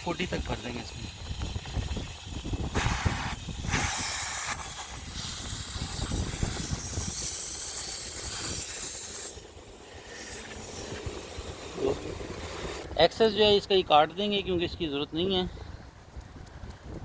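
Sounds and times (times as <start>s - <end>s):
compressed air hissing into tyre: 0.0s - 13.0s.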